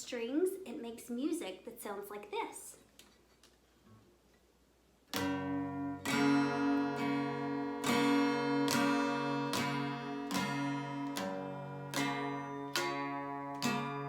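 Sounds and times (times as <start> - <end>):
acoustic guitar strumming: 5.1 - 14.0.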